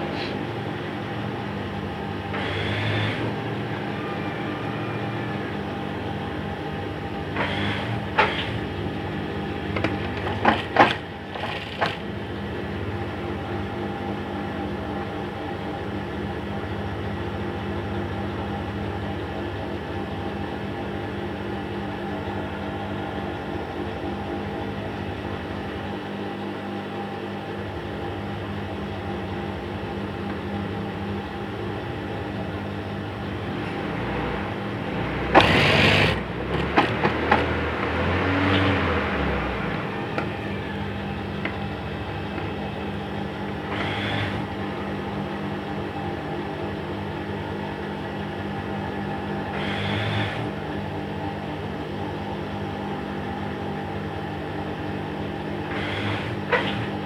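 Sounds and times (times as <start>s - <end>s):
sewing machine motor humming: 1.7s - 5.9s, 7.0s - 12.3s, 34.4s - 44.8s, 49.5s - 50.6s, 55.6s - 57.0s.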